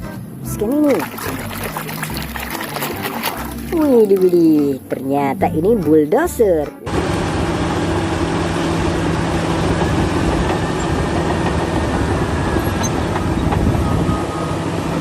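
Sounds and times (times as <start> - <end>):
low motor hum: 6.9 - 15.0.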